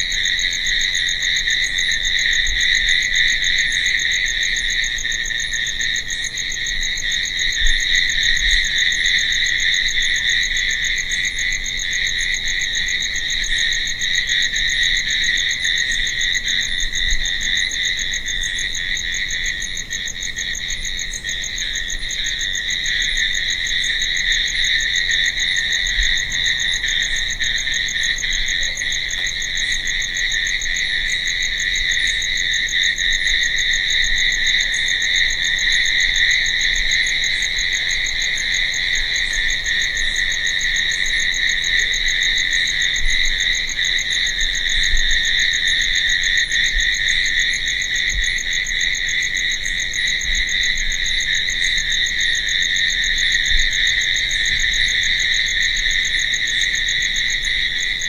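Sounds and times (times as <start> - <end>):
crickets chirping: 0.0 - 58.0.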